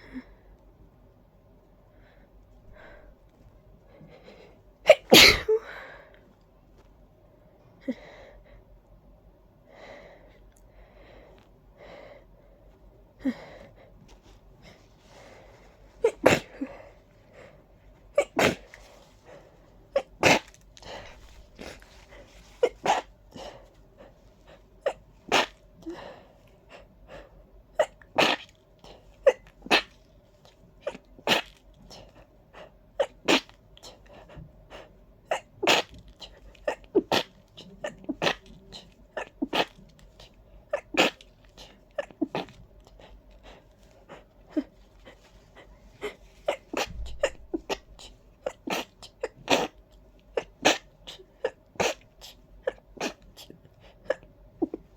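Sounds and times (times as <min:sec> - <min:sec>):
person sneezing: 0:04.9 - 0:05.7, 0:18.2 - 0:18.7, 0:46.0 - 0:49.8, 0:50.4 - 0:54.8.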